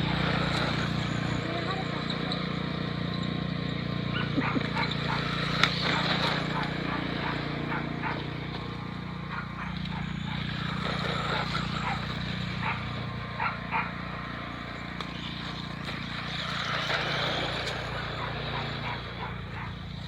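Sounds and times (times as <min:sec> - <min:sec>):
toy car electric motor drone: 0:00.0 - 0:20.0
dog yelping: 0:04.1 - 0:08.4, 0:09.2 - 0:10.8, 0:11.6 - 0:14.0, 0:18.1 - 0:19.9.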